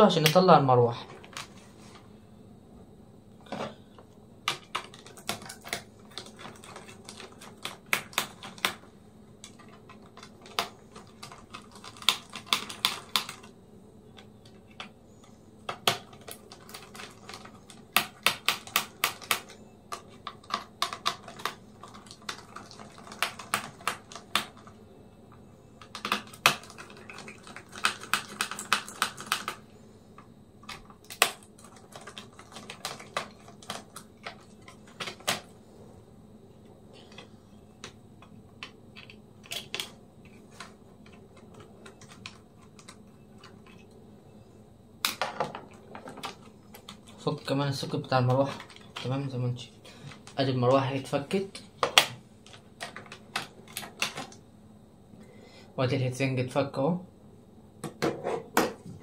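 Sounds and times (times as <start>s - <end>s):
small parts knocking: 4.4s - 13.5s, 15.7s - 24.7s, 30.2s - 35.5s, 37.0s - 44.0s.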